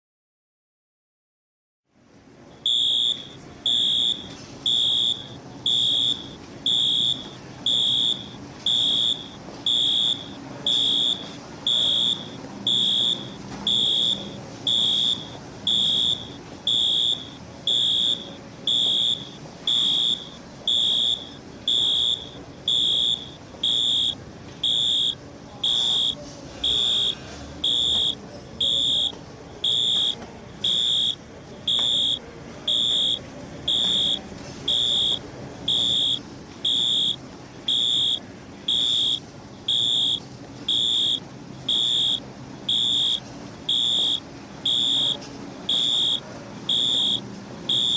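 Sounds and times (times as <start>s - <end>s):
fire alarm beeping: 2.6s - 47.9s.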